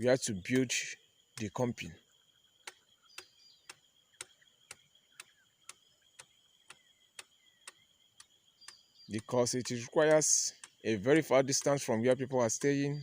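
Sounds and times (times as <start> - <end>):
faint even ticking: 2.6 - 13.0.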